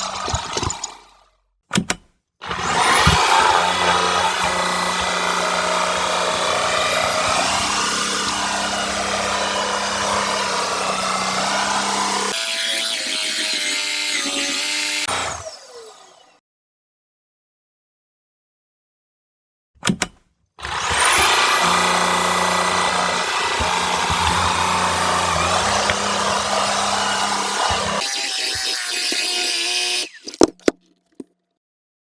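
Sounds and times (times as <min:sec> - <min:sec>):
vacuum motor whine: 0:02.4 - 0:12.4, 0:20.6 - 0:30.2
vacuum brush-head sucking hair: 0:02.4 - 0:12.5, 0:20.6 - 0:30.4.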